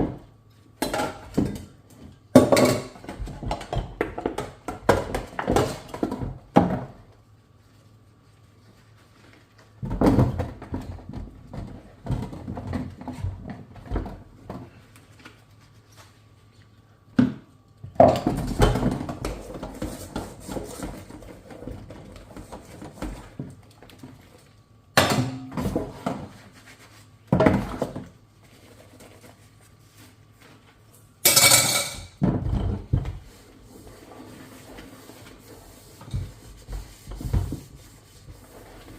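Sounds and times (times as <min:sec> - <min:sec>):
dishes and cutlery clinking: 0:31.2 - 0:32.8.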